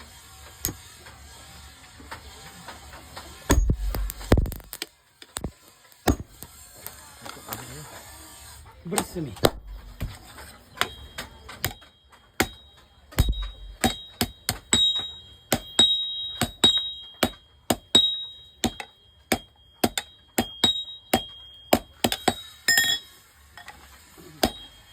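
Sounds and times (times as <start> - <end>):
hammer striking steel on anvil: 3.5 - 4.6, 10.8 - 24.9.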